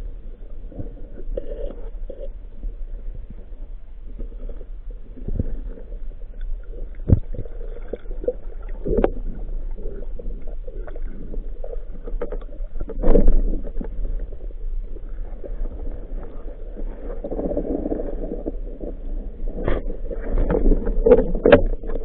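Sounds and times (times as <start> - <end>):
muffled underwater rumble: 0.0 - 22.0
underwater clicks and knocks: 6.4 - 9.5, 10.2 - 14.3, 19.5 - 22.0.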